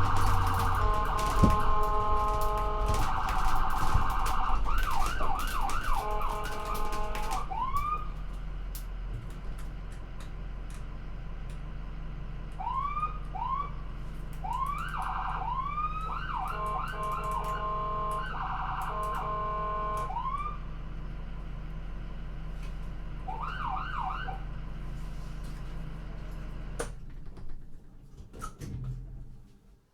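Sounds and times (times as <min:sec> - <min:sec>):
ambulance siren: 0:00.0 - 0:08.2, 0:12.6 - 0:20.7, 0:23.2 - 0:24.6
engine and road rumble: 0:00.0 - 0:29.8
clicks: 0:16.4 - 0:19.3.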